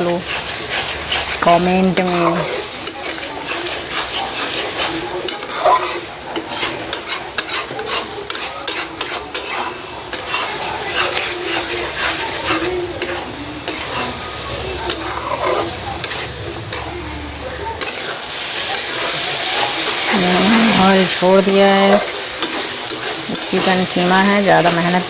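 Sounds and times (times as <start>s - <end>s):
utensil scraping and clinking pan: 0.0s - 24.8s
food sizzling in oil: 0.0s - 25.0s.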